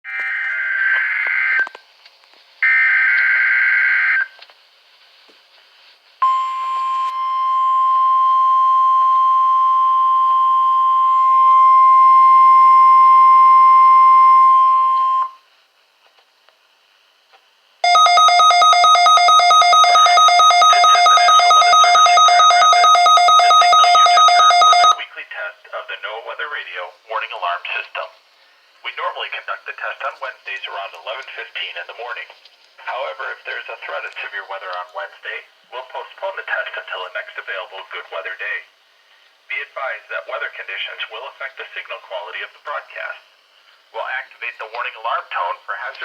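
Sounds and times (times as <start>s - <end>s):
rapid electronic beeping: 17.8s - 25.0s
steady alert tone: 17.8s - 25.0s.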